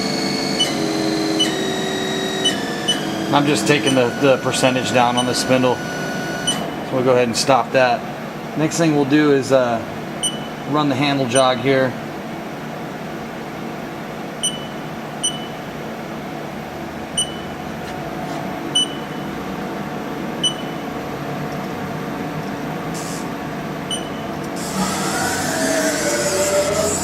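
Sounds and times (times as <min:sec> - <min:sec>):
servo motor whining: 0:00.0 - 0:06.7, 0:24.5 - 0:27.0
idle milling machine hum: 0:00.0 - 0:08.8, 0:12.0 - 0:27.0
short high keypad beeps: 0:10.2 - 0:10.6, 0:14.4 - 0:15.6, 0:17.2 - 0:17.6, 0:18.8 - 0:19.2, 0:20.4 - 0:20.8, 0:23.9 - 0:24.2.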